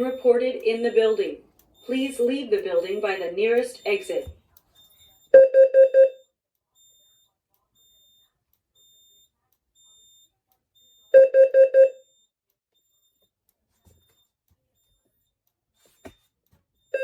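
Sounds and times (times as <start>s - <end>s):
fire alarm quick beeps: 0.0s - 13.2s, 16.8s - 17.0s.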